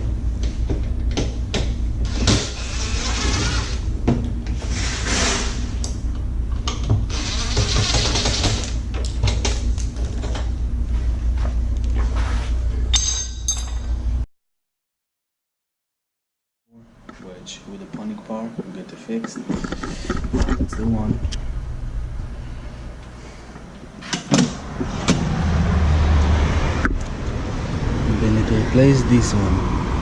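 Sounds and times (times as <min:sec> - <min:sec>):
steady low hum: 0:00.0 - 0:14.3, 0:16.7 - 0:30.0
power tool whirring: 0:02.0 - 0:03.9, 0:07.1 - 0:08.8.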